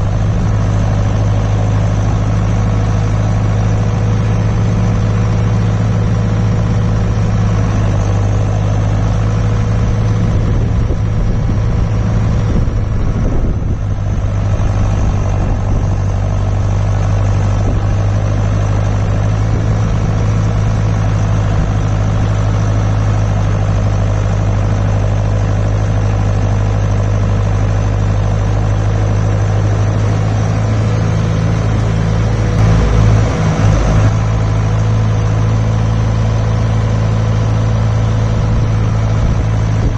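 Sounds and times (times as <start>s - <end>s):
tractor diesel engine running: 0.0s - 39.9s
low thumps: 32.4s - 35.7s.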